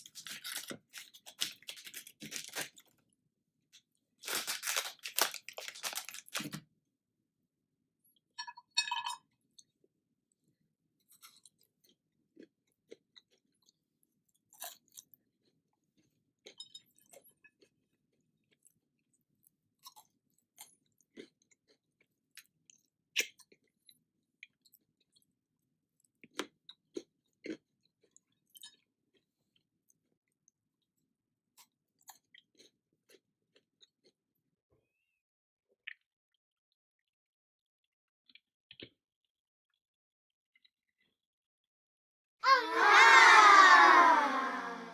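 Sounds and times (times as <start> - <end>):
crunching and chewing snack: 0.0 - 3.1, 4.2 - 6.6, 11.0 - 34.9, 38.2 - 39.0.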